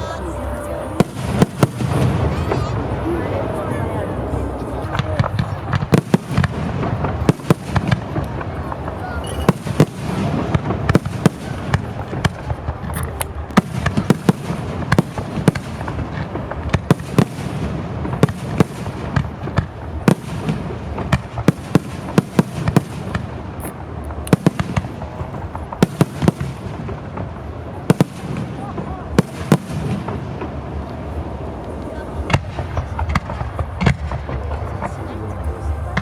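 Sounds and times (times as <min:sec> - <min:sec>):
noisy background: 0:00.0 - 0:16.6, 0:30.0 - 0:36.0
fireworks bangs: 0:00.0 - 0:36.0.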